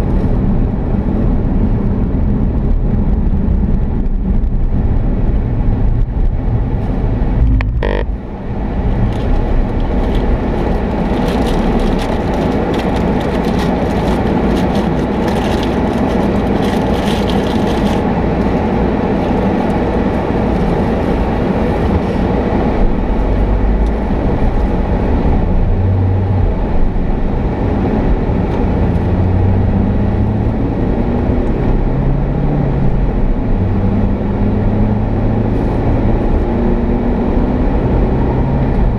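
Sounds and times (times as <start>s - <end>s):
vehicle engine and road noise: 0.0s - 38.9s
low hum: 2.2s - 10.9s.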